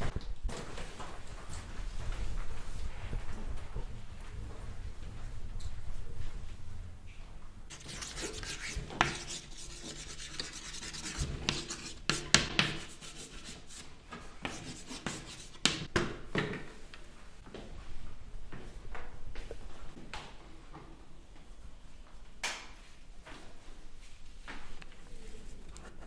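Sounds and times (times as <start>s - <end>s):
rubbing and scraping: 7.7s - 15.9s.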